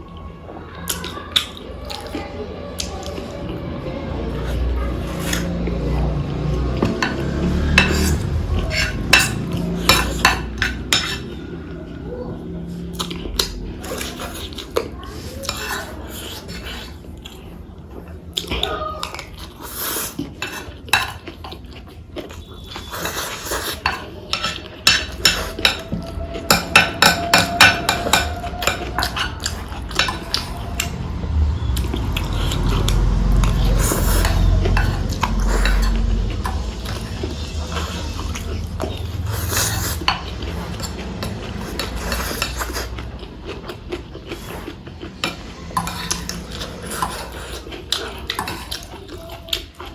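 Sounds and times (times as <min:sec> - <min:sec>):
cutlery clinking on a plate: 0:06.9 - 0:11.3, 0:22.7 - 0:30.6
low rumble: 0:28.3 - 0:43.5.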